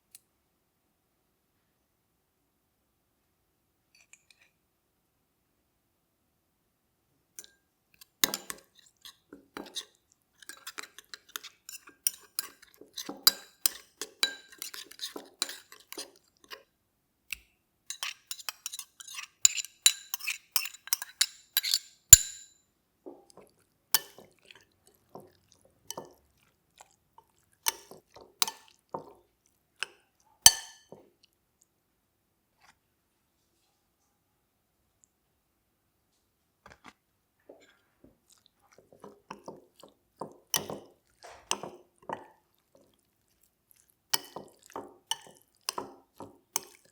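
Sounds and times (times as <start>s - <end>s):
utensils clinking on glass dishes: 9.6s - 16.1s, 17.9s - 22.6s, 44.2s - 46.9s.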